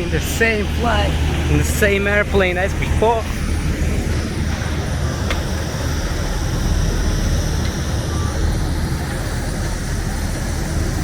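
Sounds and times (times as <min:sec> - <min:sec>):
airliner rumble and hiss: 0:00.0 - 0:11.0.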